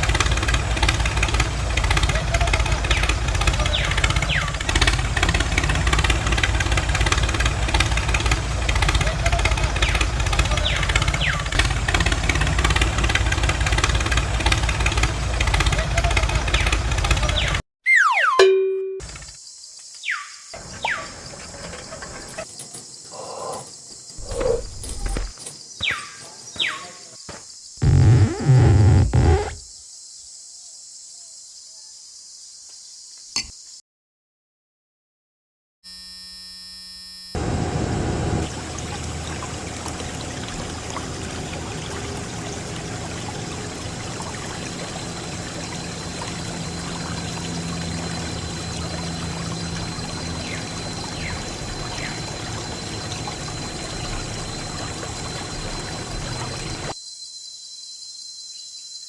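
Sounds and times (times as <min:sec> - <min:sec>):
water running and splashing: 0:00.0 - 0:17.6, 0:37.4 - 0:57.0.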